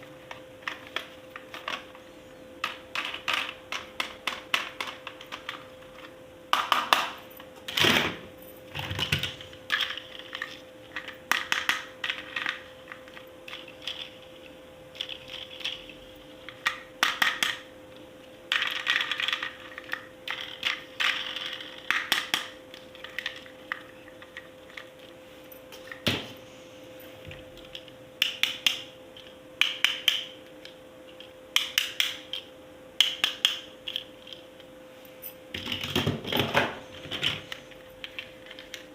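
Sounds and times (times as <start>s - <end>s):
faint steady hum: 0.0s - 38.9s
plastic toy pieces clicking: 18.5s - 24.8s.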